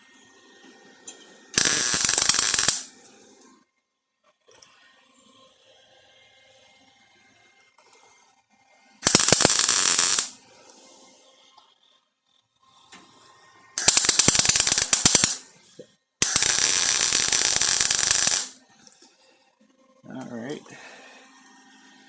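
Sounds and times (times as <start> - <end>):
welder crackling: 1.6 - 2.9, 9.0 - 10.4, 13.8 - 15.5, 16.2 - 18.6.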